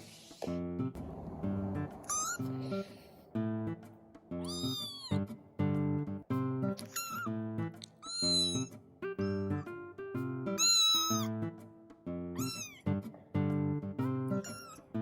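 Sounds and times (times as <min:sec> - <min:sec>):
background music: 0:00.0 - 0:15.0
kitten meowing: 0:02.0 - 0:02.6, 0:04.4 - 0:05.3, 0:06.8 - 0:09.6, 0:10.6 - 0:11.4, 0:12.4 - 0:12.9, 0:14.4 - 0:14.9.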